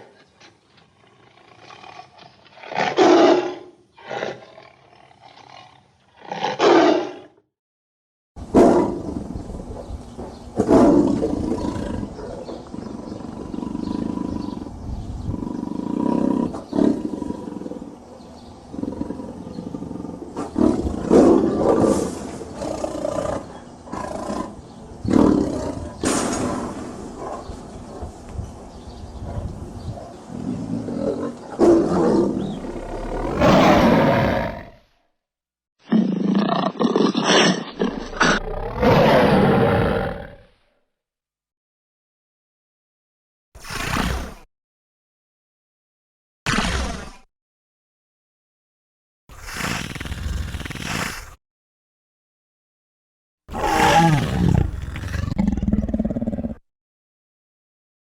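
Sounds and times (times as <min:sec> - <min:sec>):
tiger roaring and growling: 0:01.0 - 0:07.4, 0:08.4 - 0:09.9, 0:10.6 - 0:28.1, 0:30.1 - 0:34.9, 0:35.8 - 0:40.6, 0:43.6 - 0:44.5, 0:46.5 - 0:47.3, 0:53.5 - 0:56.6.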